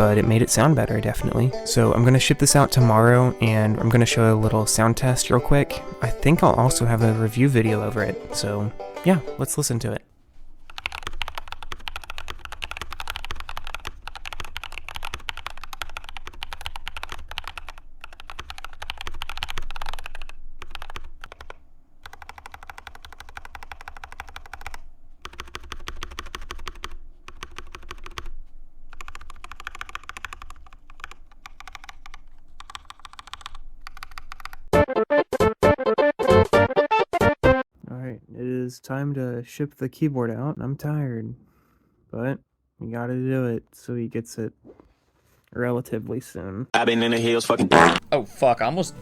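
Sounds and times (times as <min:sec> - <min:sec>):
music: 0:00.0 - 0:09.5, 0:34.7 - 0:37.7
mechanical keyboard typing: 0:10.6 - 0:34.7.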